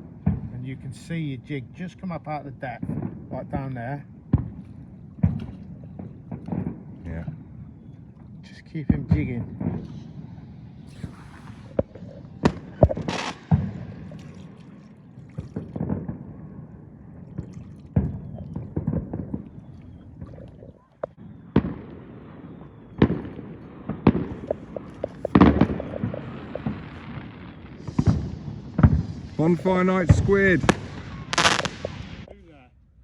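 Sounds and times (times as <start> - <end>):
fireworks bangs and cracks: 2.6 - 7.4, 8.4 - 14.2, 15.4 - 16.8, 18.0 - 32.3.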